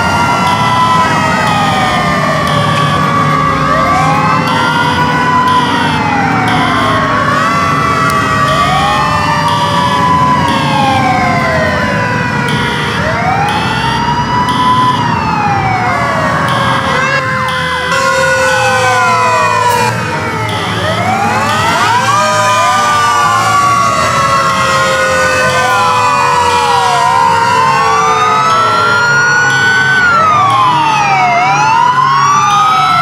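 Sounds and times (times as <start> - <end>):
pulsing high siren tone: 0.0 - 33.0
slowly falling siren tones: 0.0 - 33.0
wailing siren: 0.0 - 33.0
low engine rumble: 0.1 - 12.4.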